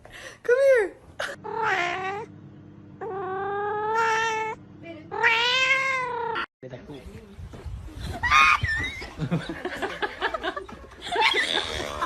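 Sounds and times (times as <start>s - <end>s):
cat yowling: 1.4s - 2.3s, 3.0s - 6.5s.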